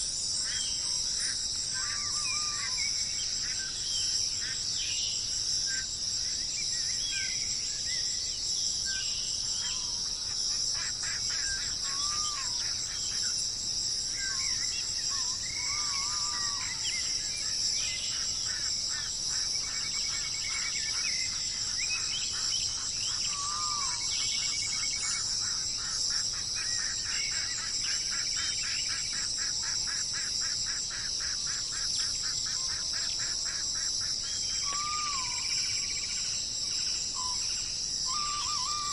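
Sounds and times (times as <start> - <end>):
insects droning: 0.0 - 38.9
birds chirping: 38.0 - 38.9.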